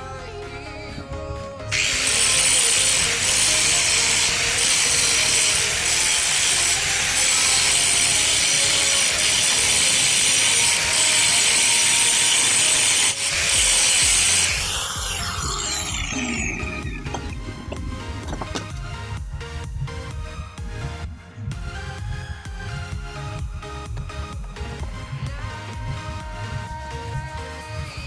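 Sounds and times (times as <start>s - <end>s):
power tool grinding metal: 1.7s - 20.1s.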